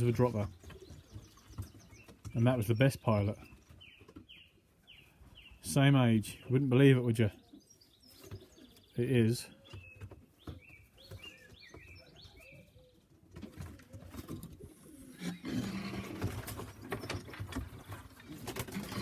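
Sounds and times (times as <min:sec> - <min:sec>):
pigeons cooing: 0:10.9 - 0:19.0
pigeons high rising calls: 0:10.9 - 0:19.0.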